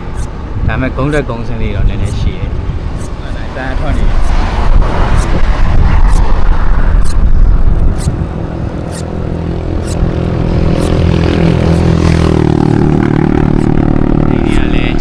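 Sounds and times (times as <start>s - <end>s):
vehicle engine running: 7.0s - 15.0s.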